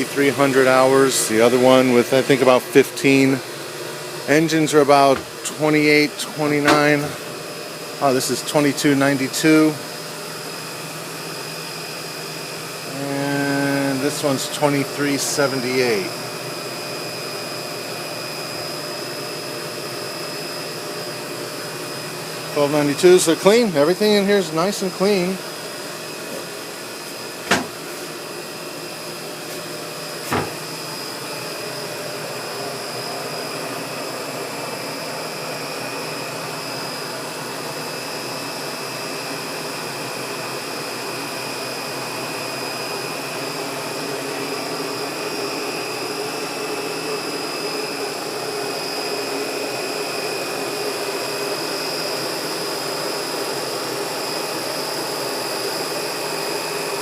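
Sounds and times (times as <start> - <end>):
high whines: 4.2 - 7.4, 22.4 - 31.7
diesel generator droning: 4.2 - 9.8, 12.8 - 16.3, 22.4 - 25.6
sharp knocks: 27.4 - 27.8, 30.3 - 30.6.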